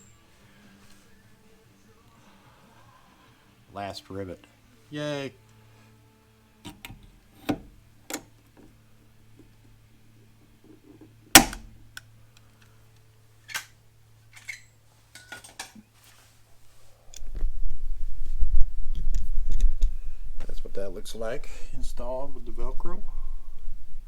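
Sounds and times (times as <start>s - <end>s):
faint steady hum: 0.0s - 24.0s
rivet mandrel snapping: 11.4s - 12.1s.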